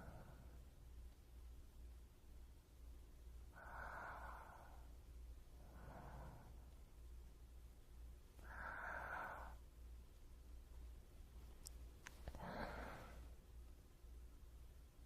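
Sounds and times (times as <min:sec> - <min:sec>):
person breathing softly: 0:00.0 - 0:00.9, 0:03.4 - 0:07.1, 0:08.3 - 0:09.8, 0:12.0 - 0:13.5.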